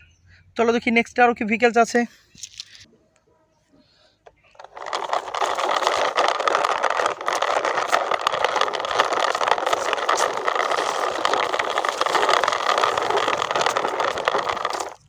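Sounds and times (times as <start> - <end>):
toy vehicle rattling whir: 4.3 - 15.0.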